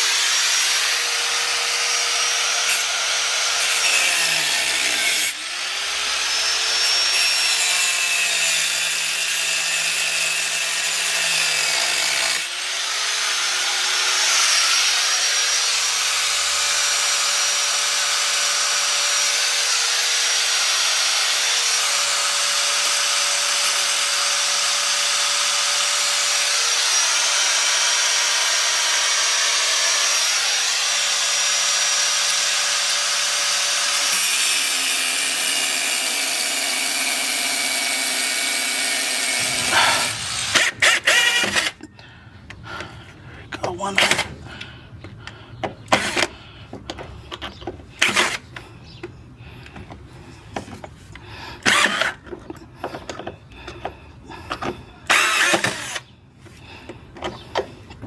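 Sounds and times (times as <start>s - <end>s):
angle grinder cutting metal: 0.0s - 41.9s, 51.6s - 53.2s, 54.6s - 56.1s.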